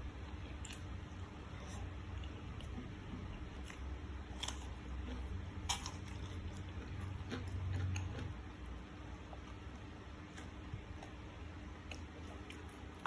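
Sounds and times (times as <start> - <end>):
person chewing and biting food: 0.3 - 8.6.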